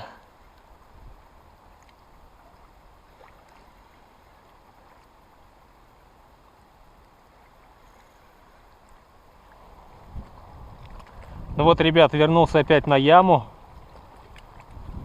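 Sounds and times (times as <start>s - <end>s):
faint ticks: 0.0s - 3.9s, 4.8s - 11.4s
river water: 0.0s - 15.0s
wind: 0.0s - 15.0s.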